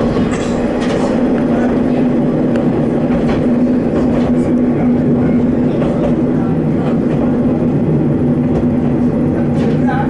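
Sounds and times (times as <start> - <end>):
diesel engine drone: 0.0 - 10.0
wheels rumbling on rail: 0.0 - 10.0.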